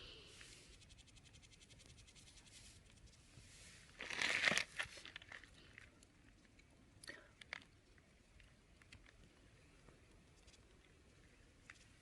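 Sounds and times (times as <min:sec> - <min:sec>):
dry material crumpling: 0:03.9 - 0:05.5.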